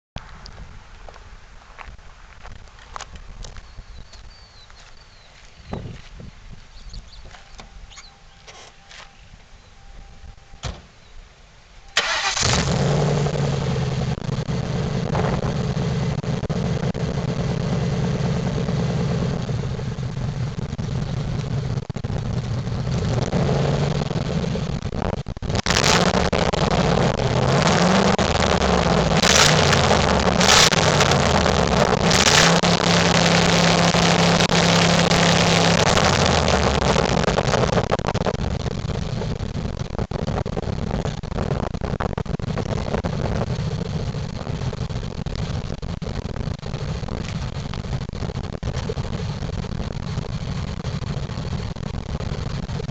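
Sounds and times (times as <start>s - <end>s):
car engine starting and revving: 12.0s - 48.0s.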